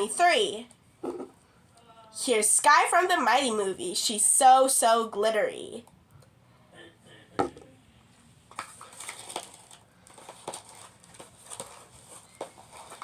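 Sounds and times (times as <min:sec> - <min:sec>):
plastic and card rustling: 0:08.5 - 0:13.0.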